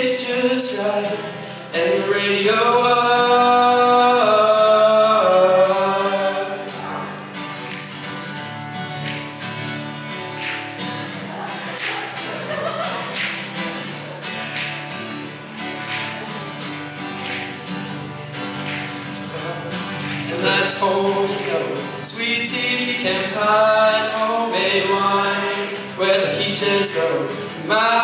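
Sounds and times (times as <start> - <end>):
person singing: 0.0 - 7.2, 19.3 - 28.0
acoustic guitar strumming: 0.0 - 28.0.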